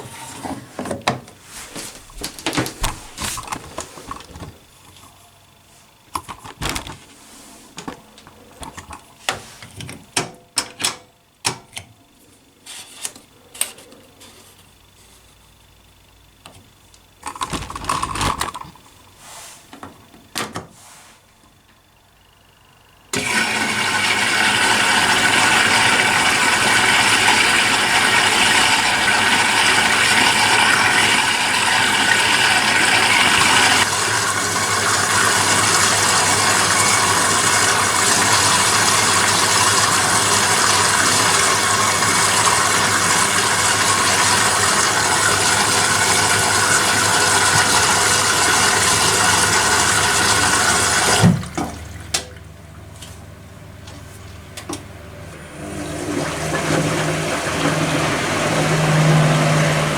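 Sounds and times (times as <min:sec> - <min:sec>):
water rushing into washing machine: 0:01.4 - 0:04.8, 0:17.2 - 0:19.7, 0:23.1 - 0:59.9.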